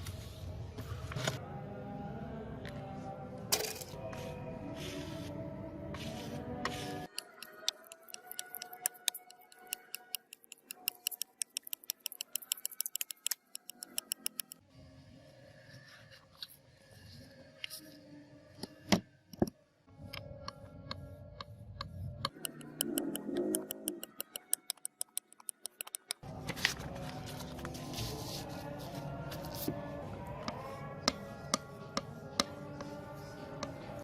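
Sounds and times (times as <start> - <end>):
music with fast ticking beat: 7.1 - 14.6, 22.3 - 26.2.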